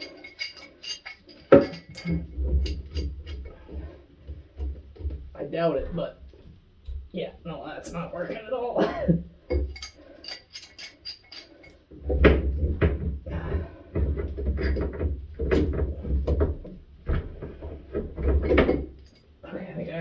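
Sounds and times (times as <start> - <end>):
wrench clanking on metal pipe: 0.0 - 4.0, 9.5 - 11.8.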